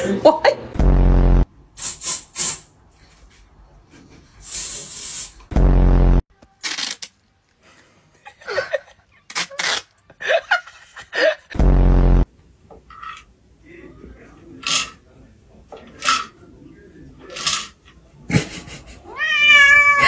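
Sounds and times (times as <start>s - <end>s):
short laughs: 18.3s - 19.2s.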